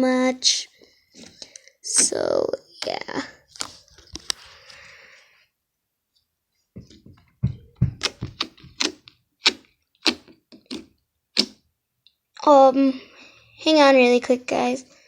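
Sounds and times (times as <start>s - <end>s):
slime squelching and clicking: 8.0s - 11.6s.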